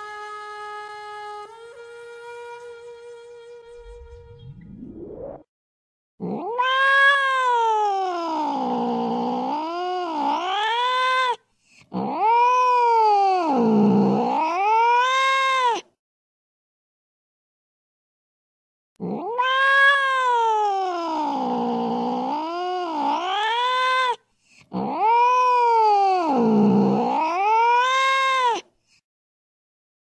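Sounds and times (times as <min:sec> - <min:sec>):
cat yowling: 0:06.2 - 0:15.8, 0:19.0 - 0:28.6.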